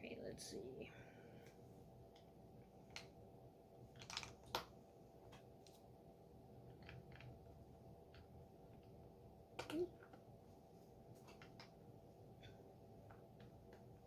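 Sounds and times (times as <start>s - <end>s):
plastic pieces clicking together: 4.0s - 4.7s.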